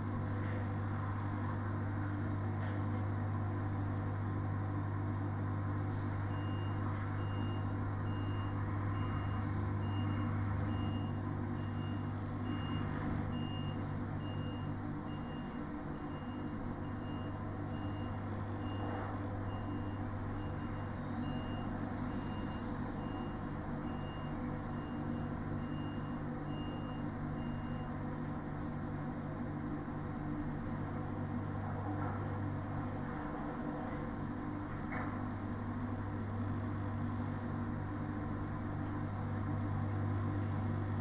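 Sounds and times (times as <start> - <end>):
lorry engine and refrigeration drone: 0.0 - 41.0
reversing alarm beeping: 6.3 - 28.0.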